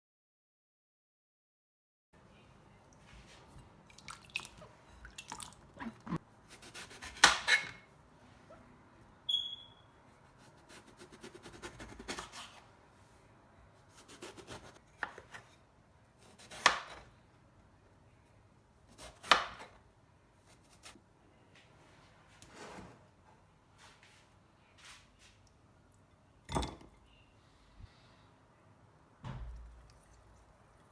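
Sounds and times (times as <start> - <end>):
knife cutting on chopping board: 6.5 - 7.8, 10.4 - 12.6, 13.9 - 15.6, 16.2 - 17.1.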